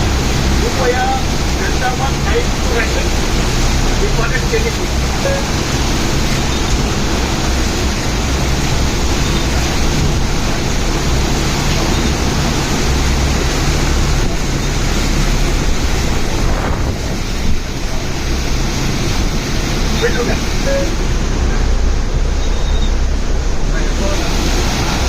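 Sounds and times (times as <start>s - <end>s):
steady rushing noise: 0.0s - 25.0s.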